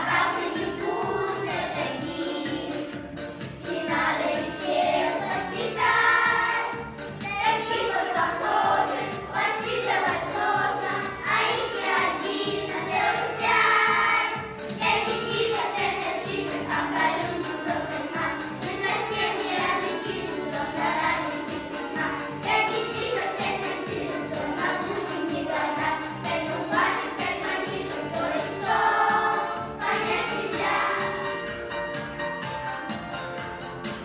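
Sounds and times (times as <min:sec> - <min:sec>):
children singing in chorus: 0:00.0 - 0:02.9, 0:03.7 - 0:31.2
musical accompaniment: 0:00.0 - 0:34.0.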